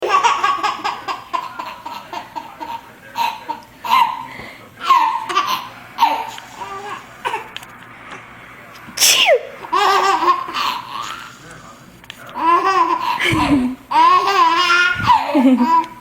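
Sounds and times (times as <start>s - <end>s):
small child laughing: 12.4s - 16.0s.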